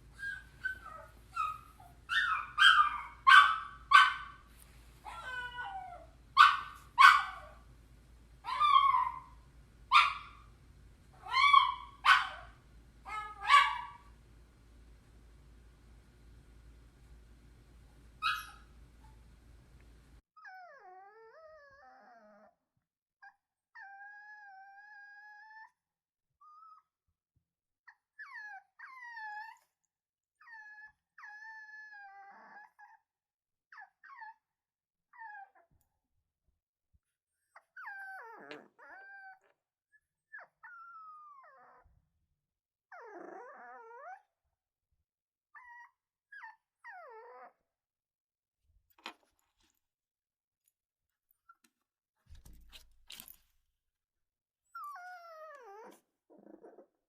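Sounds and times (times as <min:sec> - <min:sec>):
puppies whining and crying: 0:00.1 - 0:04.1, 0:05.1 - 0:07.5, 0:08.5 - 0:09.3, 0:11.2 - 0:12.4, 0:18.2 - 0:18.7, 0:20.4 - 0:22.5, 0:23.2 - 0:25.7, 0:26.4 - 0:26.8, 0:28.2 - 0:29.7, 0:30.4 - 0:33.0, 0:33.8 - 0:34.4, 0:35.2 - 0:35.6, 0:37.4 - 0:42.0, 0:42.9 - 0:44.3, 0:45.6 - 0:47.6, 0:54.7 - 0:57.0
puppy yelp: 0:00.2 - 0:04.4, 0:05.0 - 0:07.6, 0:08.4 - 0:10.5, 0:11.2 - 0:14.1, 0:18.2 - 0:19.2, 0:37.4 - 0:41.9, 0:45.6 - 0:47.6, 0:54.7 - 0:56.9.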